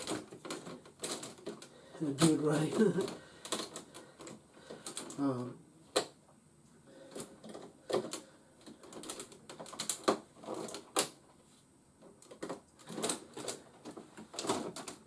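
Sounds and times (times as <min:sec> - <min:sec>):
plastic toy parts clicking: 0:00.0 - 0:05.2, 0:07.1 - 0:11.2.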